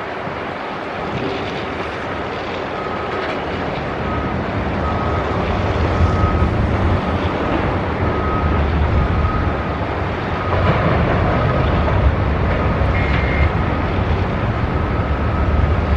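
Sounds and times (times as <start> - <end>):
dump truck diesel engine running: 3.9 - 15.9
backup alarm beeping: 4.0 - 7.5, 12.8 - 13.7.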